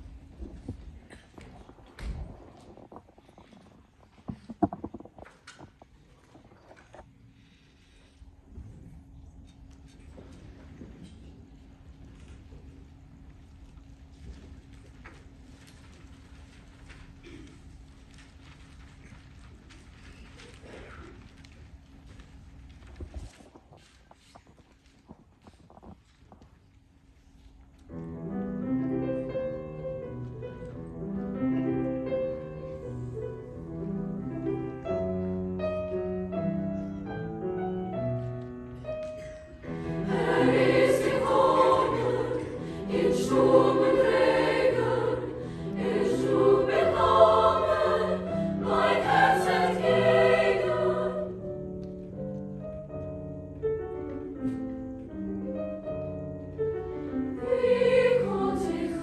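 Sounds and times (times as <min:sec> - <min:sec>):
soprano-alto choir singing: 0:39.1 - 0:52.8, 0:55.7 - 0:59.0.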